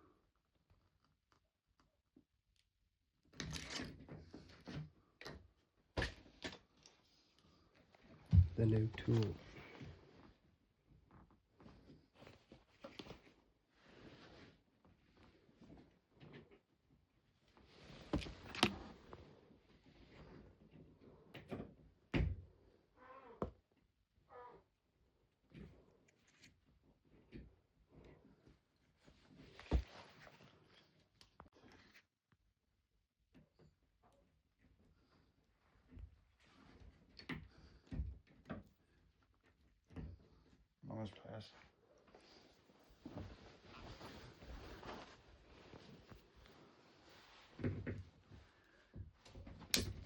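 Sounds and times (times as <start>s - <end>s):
tools knocking and clicking: 49.7s - 50.0s.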